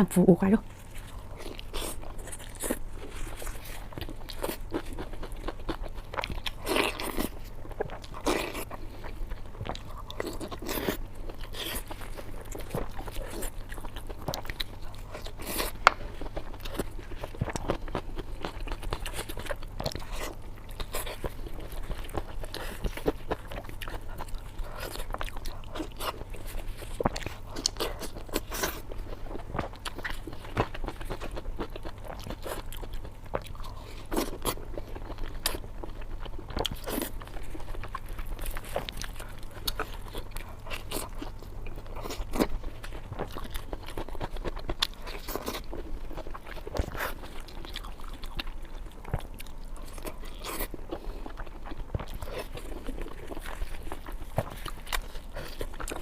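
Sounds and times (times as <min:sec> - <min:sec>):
chewing and biting crunches: 0:00.6 - 0:56.0.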